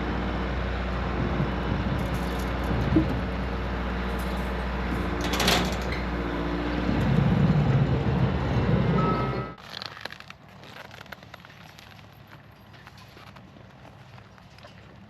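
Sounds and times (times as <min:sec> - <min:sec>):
vehicle engine humming: 0:00.0 - 0:09.6.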